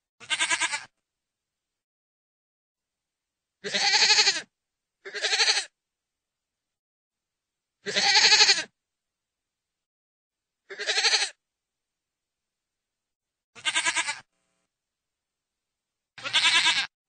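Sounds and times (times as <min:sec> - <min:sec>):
goat bleating: 0:00.2 - 0:00.9, 0:03.6 - 0:05.7, 0:07.8 - 0:08.7, 0:10.7 - 0:11.4, 0:13.6 - 0:14.3, 0:16.2 - 0:16.9.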